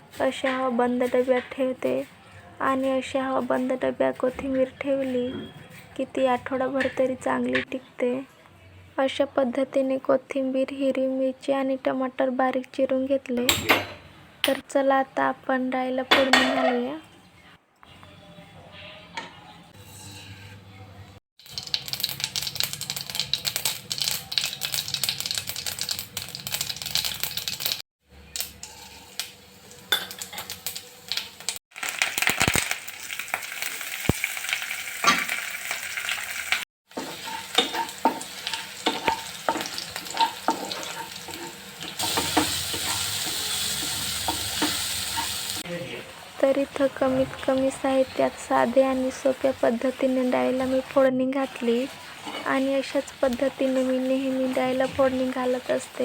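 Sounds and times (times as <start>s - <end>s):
spoon scraping metal pan: 19.7s - 20.7s, 36.9s - 45.6s, 51.5s - 55.7s
hot oil sizzling in a pan: 21.4s - 56.0s.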